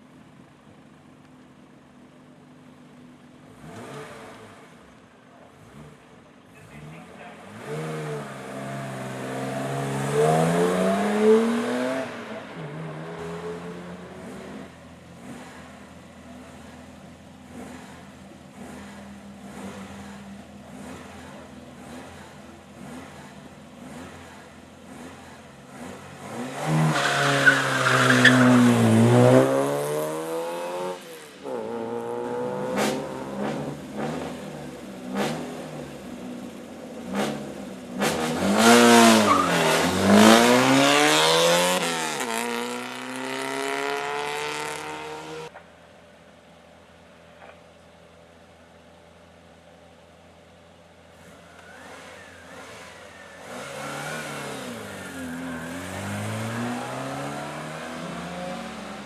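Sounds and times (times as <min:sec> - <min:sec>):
faint car engine: 0:00.0 - 0:59.0
race car engine passing: 0:37.1 - 0:45.5, 0:51.6 - 0:59.0.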